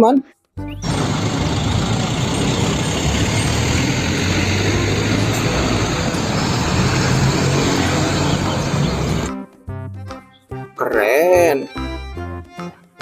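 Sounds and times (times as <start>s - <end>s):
truck engine running: 0.7s - 9.3s.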